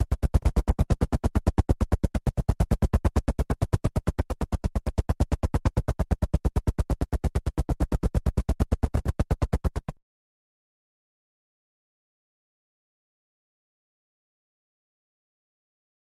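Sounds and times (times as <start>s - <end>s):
helicopter rotor chopping: 0.0s - 10.0s.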